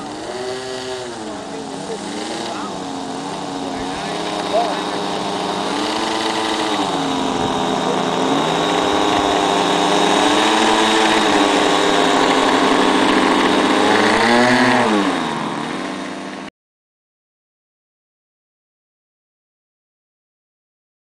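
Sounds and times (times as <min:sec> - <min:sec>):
model plane engines: 0:00.0 - 0:16.5.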